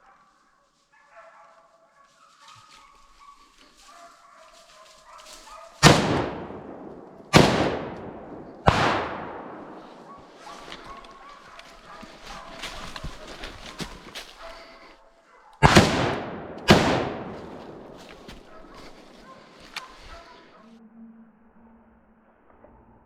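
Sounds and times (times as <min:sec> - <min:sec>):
hounds baying: 0:00.0 - 0:07.1, 0:08.0 - 0:20.8
rifle shots: 0:05.8 - 0:10.6, 0:15.6 - 0:19.1.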